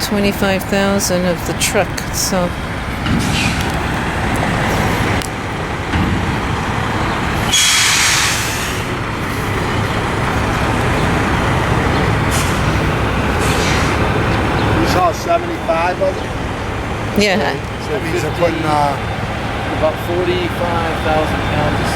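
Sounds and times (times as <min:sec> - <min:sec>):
truck diesel engine rumble: 0:00.0 - 0:21.9
air brakes hissing: 0:03.2 - 0:03.7, 0:07.4 - 0:09.8, 0:12.1 - 0:14.8.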